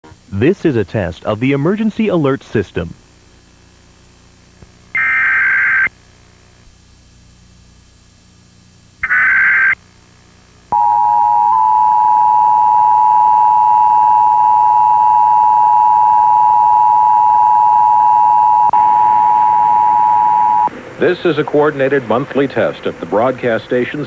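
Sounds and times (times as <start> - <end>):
loud steady two-tone alert tone: 5.0 - 5.9, 9.0 - 9.8, 10.8 - 20.7
warbling digital data tones: 9.0 - 9.8.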